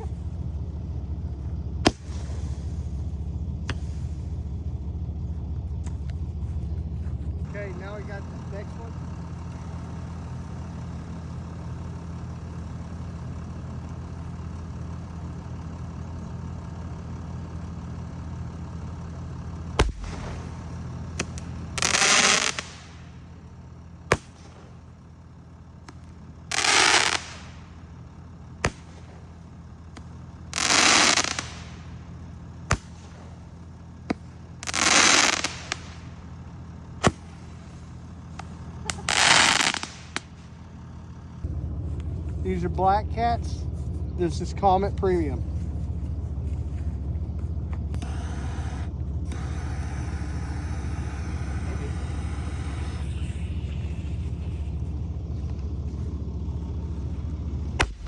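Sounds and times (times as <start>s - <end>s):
steady low hum: 0.0s - 58.0s
sharp firework cracks: 1.8s - 4.2s, 19.7s - 23.2s, 24.1s - 25.0s, 25.8s - 27.7s, 28.6s - 32.1s, 32.7s - 36.3s, 37.0s - 40.5s, 57.7s - 58.0s.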